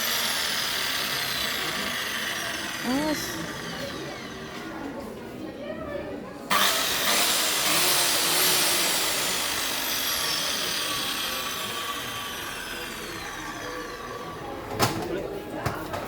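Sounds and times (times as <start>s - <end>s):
electric saw whining: 0.0s - 4.8s, 6.5s - 14.6s.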